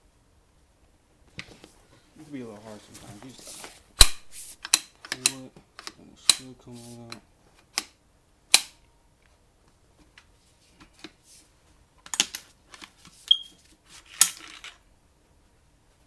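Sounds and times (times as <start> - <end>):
shotgun parts clicking and knocking: 4.0 - 6.5, 12.0 - 13.4, 14.1 - 14.8.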